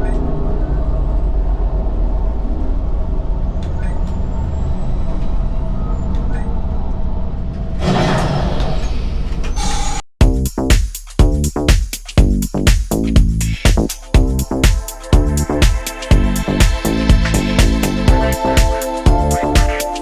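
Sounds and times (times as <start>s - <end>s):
upbeat music with strong beat: 10.2s - 20.0s
ride cockpit rumble and hum: 15.2s - 19.8s.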